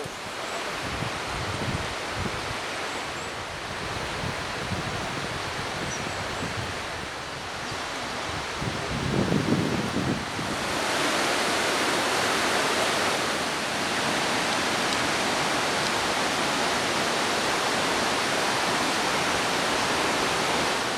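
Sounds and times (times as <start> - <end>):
stream rushing over rapids: 0.0 - 20.9.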